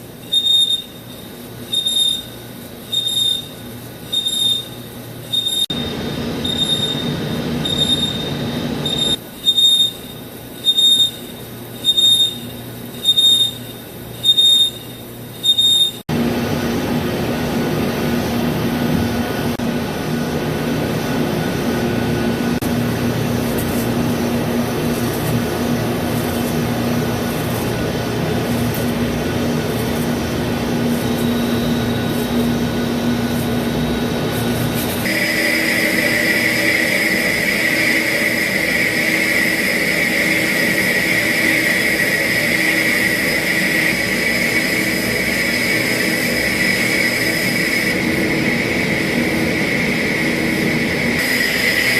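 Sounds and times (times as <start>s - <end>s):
lathe tool squealing: 0.2s - 16.0s, 35.0s - 51.9s
lathe cutting with low hum: 24.0s - 51.9s.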